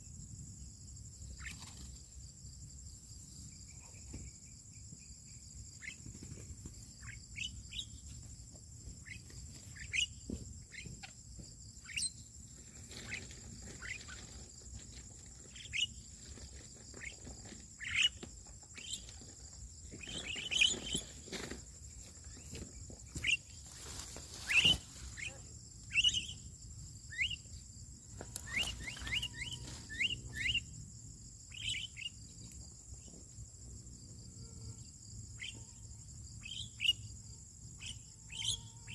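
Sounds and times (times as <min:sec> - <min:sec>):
birds chirping: 0:08.9 - 0:21.6, 0:24.4 - 0:27.6, 0:28.2 - 0:30.8, 0:31.5 - 0:32.3, 0:37.8 - 0:38.9
high-pitched insect drone: 0:22.3 - 0:38.9.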